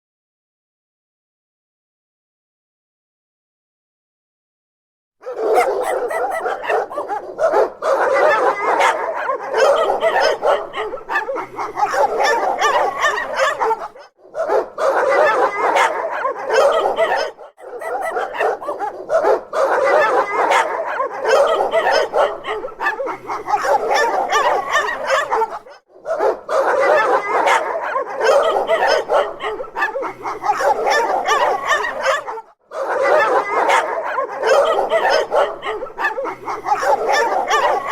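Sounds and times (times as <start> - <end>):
dogs barking: 5.2 - 37.9.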